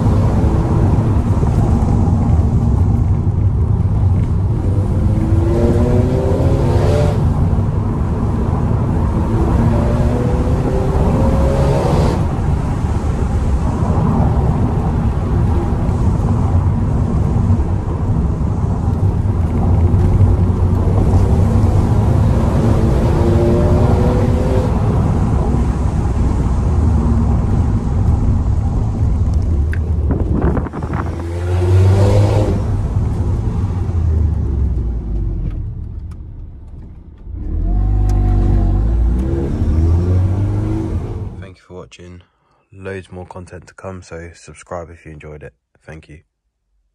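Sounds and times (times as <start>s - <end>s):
car engine revving: 4.0s - 17.6s, 18.2s - 41.4s.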